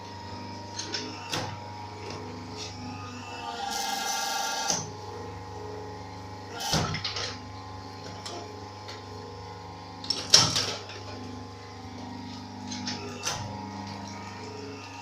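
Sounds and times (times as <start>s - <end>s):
injection molding machine humming: 0.0s - 15.0s.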